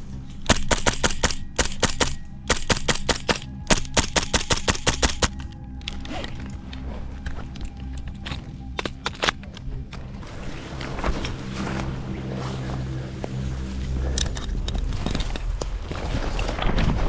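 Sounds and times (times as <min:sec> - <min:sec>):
airsoft guns firing: 0:00.5 - 0:05.4.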